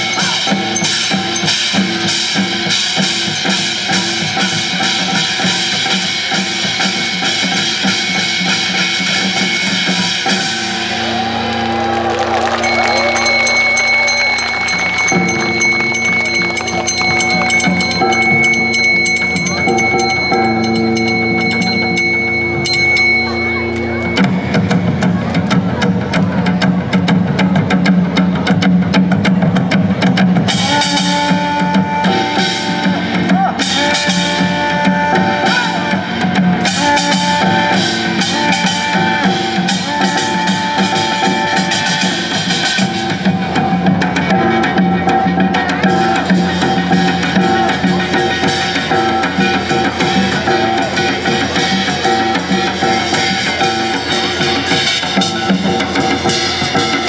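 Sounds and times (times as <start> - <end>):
drums and percussion beat: 0.0 - 57.0
melody of long held notes: 10.4 - 25.0.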